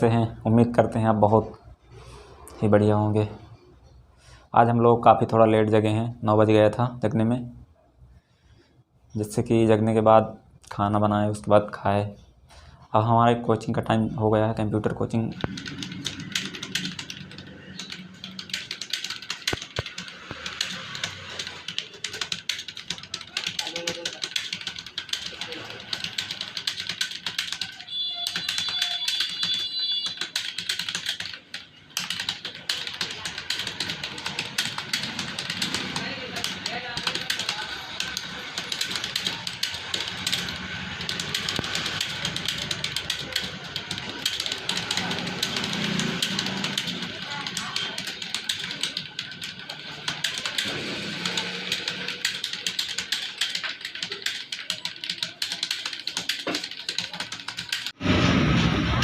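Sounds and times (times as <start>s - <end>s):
keyboard typing clicks: 15.3s - 58.0s.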